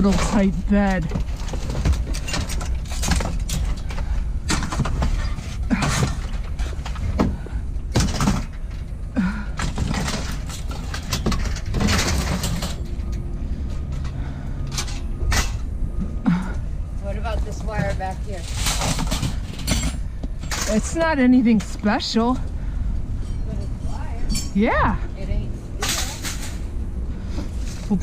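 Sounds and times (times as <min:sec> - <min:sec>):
low rumble: 0:00.0 - 0:28.0
scrap metal knocking and clinking: 0:09.6 - 0:15.7, 0:17.5 - 0:25.0.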